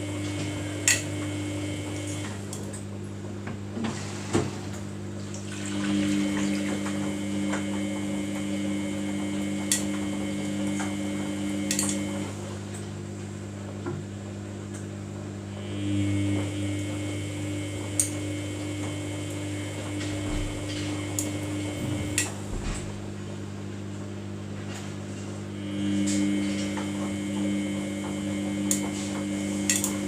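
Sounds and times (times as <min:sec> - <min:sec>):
washing machine motor humming: 0:00.0 - 0:30.0
washing machine clicks: 0:06.5 - 0:12.2, 0:17.9 - 0:23.0, 0:26.1 - 0:30.0.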